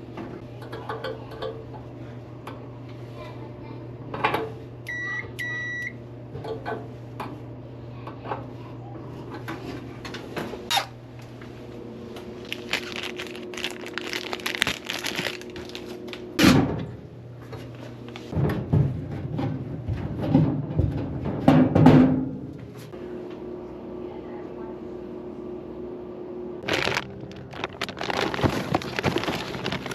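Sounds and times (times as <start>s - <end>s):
clothes dryer humming: 0.0s - 29.9s
heavy thumps in dryer: 18.3s - 22.8s.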